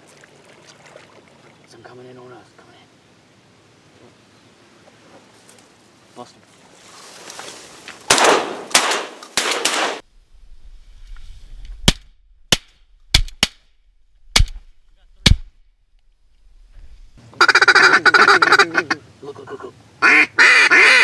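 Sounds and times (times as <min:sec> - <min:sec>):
shotgun blasts: 0:08.1 - 0:10.0
waterfowl honking and quacking: 0:17.4 - 0:21.0.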